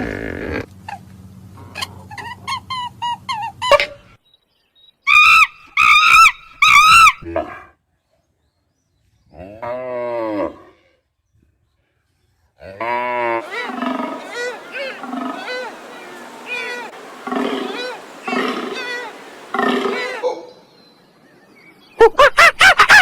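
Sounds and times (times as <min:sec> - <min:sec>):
low pitch-bending animal call: 0:13.3 - 0:20.4
short high animal calls: 0:13.4 - 0:20.4.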